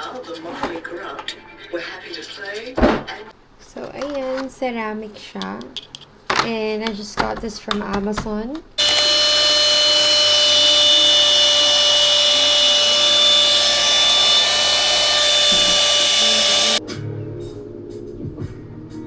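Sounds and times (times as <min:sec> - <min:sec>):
hair dryer running: 0:08.8 - 0:16.8
hair dryer switching off: 0:08.8 - 0:16.8.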